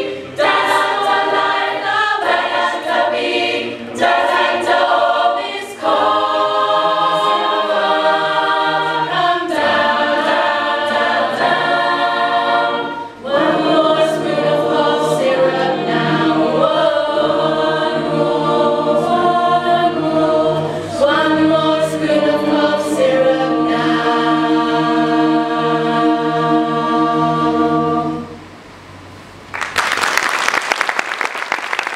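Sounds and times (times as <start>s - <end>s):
vocal group singing in harmony: 0.0s - 28.6s
audience applauding: 29.5s - 31.9s.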